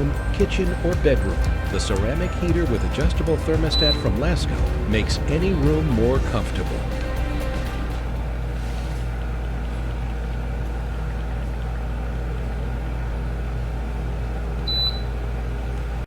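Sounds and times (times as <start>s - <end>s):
high electronic beep: 0.0s - 6.5s
appliance motor hum: 0.0s - 16.0s.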